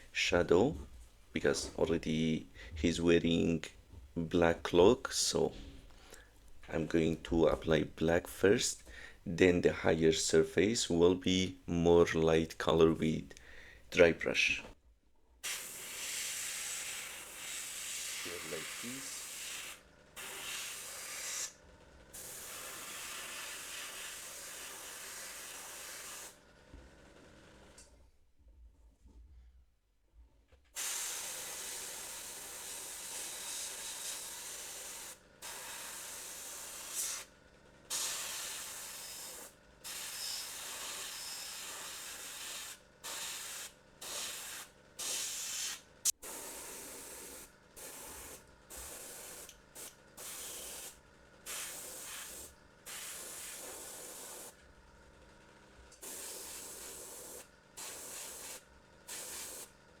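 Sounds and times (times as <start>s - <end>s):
scratchy paint brushing hiss: 15.5s - 21.6s, 43.1s - 54.6s, 56.0s - 59.8s.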